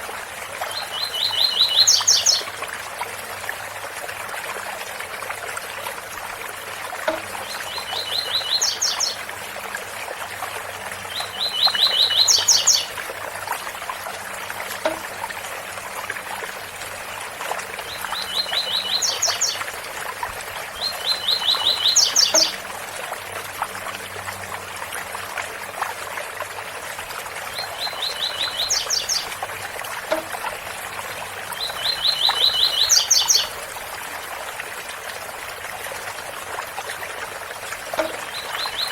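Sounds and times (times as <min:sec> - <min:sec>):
waterfall noise: 0:00.0 - 0:38.9
bird singing: 0:07.1 - 0:09.2, 0:11.1 - 0:12.9, 0:20.8 - 0:22.6, 0:27.6 - 0:29.3, 0:31.6 - 0:33.5.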